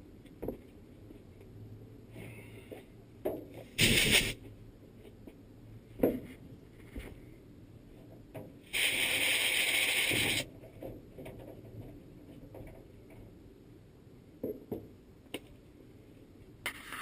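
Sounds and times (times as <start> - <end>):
burst of hissing: 3.8 - 4.4, 8.7 - 10.4.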